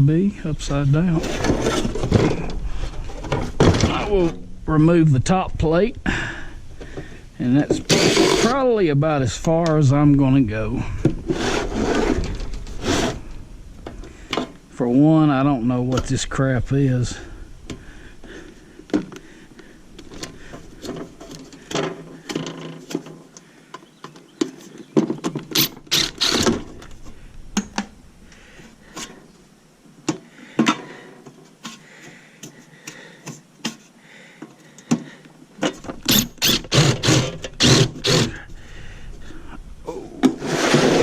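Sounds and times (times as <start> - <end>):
short ratcheting: 25.5 - 26.6.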